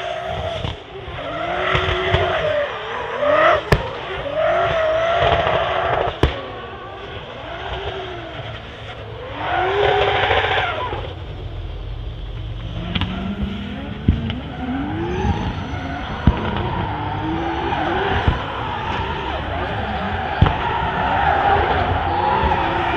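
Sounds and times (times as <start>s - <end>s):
car engine revving: 0.0s - 22.9s
exhaust bangs: 0.0s - 22.9s
tyre squeal: 0.0s - 22.9s.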